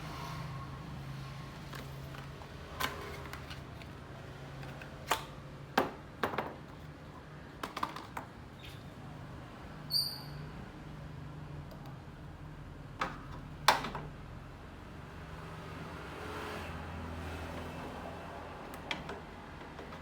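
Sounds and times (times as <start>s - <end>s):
clicks and knocks of tools: 18.7s - 20.0s.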